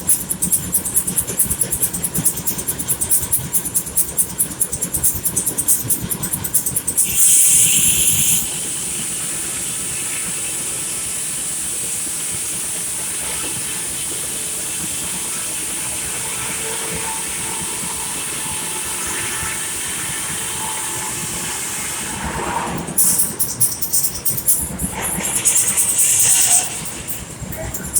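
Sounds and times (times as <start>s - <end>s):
steady hiss: 23.0s - 27.9s.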